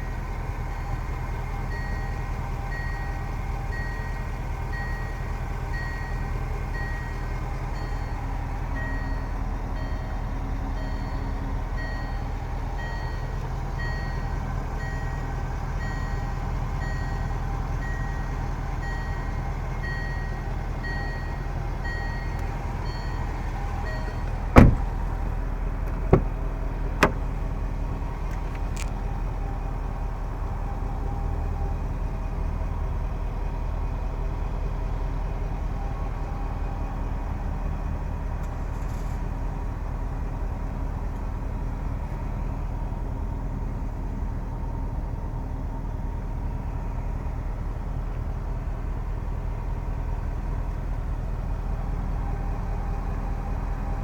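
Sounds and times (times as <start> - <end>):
car engine idling: 0.0 - 54.0
sharp knocks: 24.6 - 24.9.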